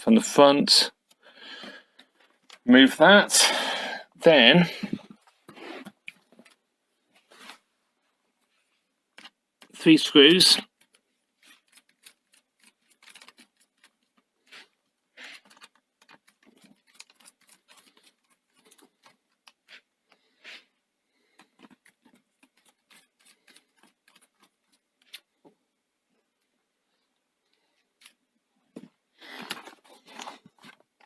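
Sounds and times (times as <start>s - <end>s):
screwdriver scraping screws: 10.9s - 20.7s.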